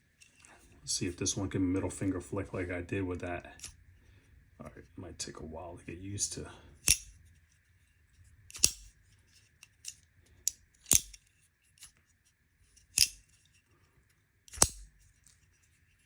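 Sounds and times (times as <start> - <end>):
folding knife blade clicking: 6.8 - 7.2, 8.5 - 8.9, 9.6 - 11.3, 12.9 - 13.4, 14.5 - 14.9.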